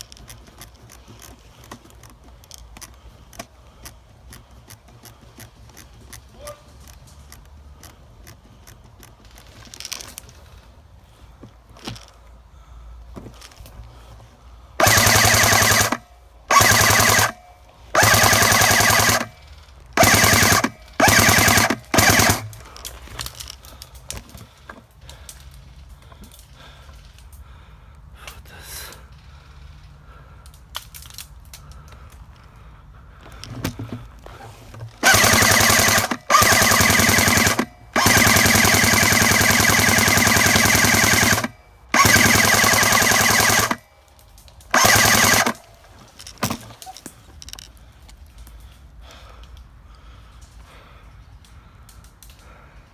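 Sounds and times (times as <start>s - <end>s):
airsoft gun firing bursts: 14.8s - 22.8s, 35.0s - 43.8s, 44.7s - 45.7s.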